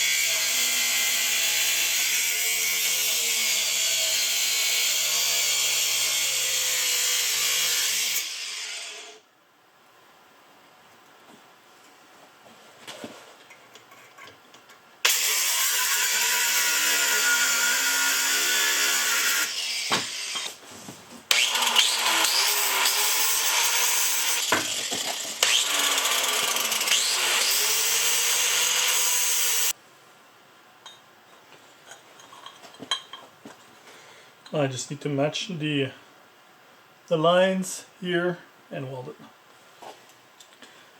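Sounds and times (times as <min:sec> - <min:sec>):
power tool grinding metal: 0:00.0 - 0:09.2, 0:15.0 - 0:20.6, 0:21.3 - 0:29.7.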